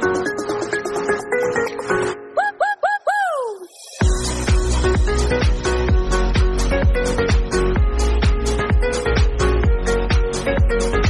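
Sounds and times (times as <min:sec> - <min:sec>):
electronic music: 0:00.0 - 0:11.0
pitched tone swooping: 0:02.4 - 0:04.0.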